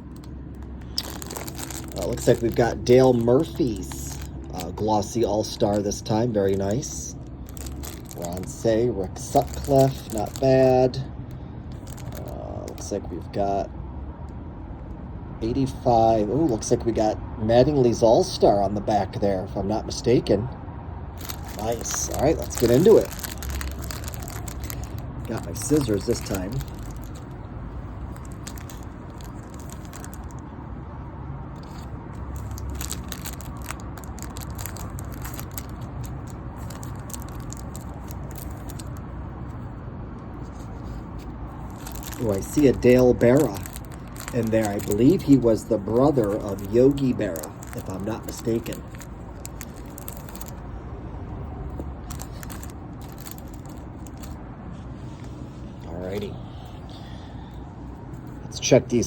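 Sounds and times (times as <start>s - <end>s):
cardboard cards rustling: 0.0s - 11.0s, 11.7s - 13.4s, 21.2s - 30.6s, 31.6s - 39.6s, 40.4s - 50.8s, 51.7s - 56.3s
plastic crinkling: 0.0s - 11.1s, 11.7s - 13.0s, 21.1s - 30.8s, 31.6s - 39.6s, 40.4s - 50.8s, 51.7s - 55.4s
steady low hum: 0.0s - 15.9s, 19.4s - 59.0s
scissors cutting plastic wrapper: 0.8s - 4.8s, 21.2s - 27.2s.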